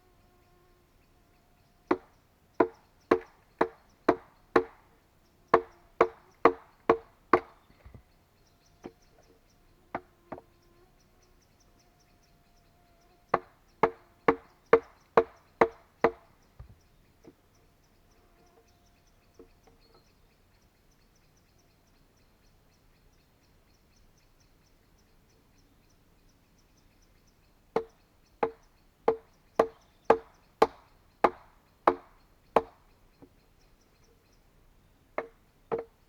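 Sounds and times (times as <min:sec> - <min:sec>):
tool striking wood: 0:27.8 - 0:32.8.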